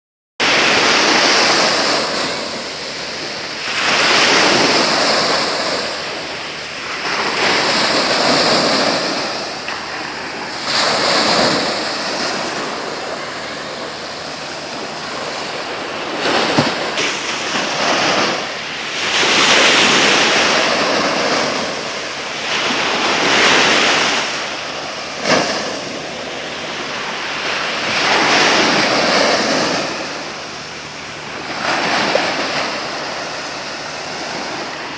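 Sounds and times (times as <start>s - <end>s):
sea waves breaking on shore: 0.4s - 34.9s.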